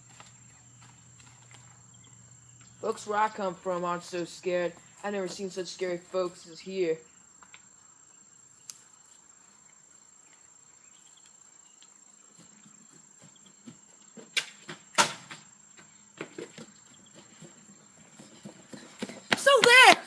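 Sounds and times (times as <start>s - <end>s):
faint crickets chirping: 0.0s - 20.0s.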